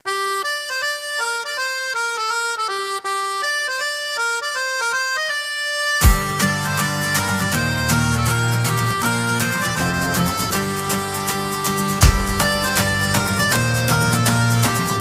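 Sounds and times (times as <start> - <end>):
quick stepping melody line: 0.1 - 15.0.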